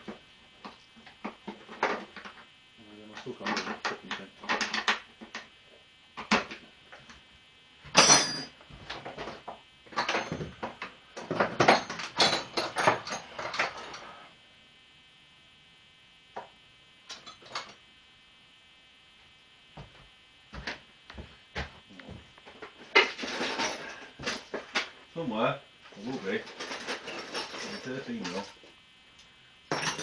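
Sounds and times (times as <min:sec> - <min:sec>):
sharp metal clank: 0:08.0 - 0:08.5.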